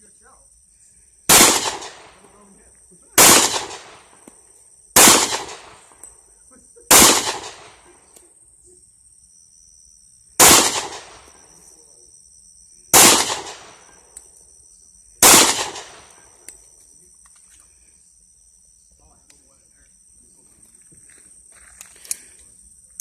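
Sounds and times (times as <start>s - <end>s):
gunshots with ringing echo: 1.3s - 2.3s, 3.2s - 4.3s, 5.0s - 6.0s, 6.9s - 8.0s, 10.4s - 11.4s, 12.9s - 14.0s, 15.2s - 16.3s.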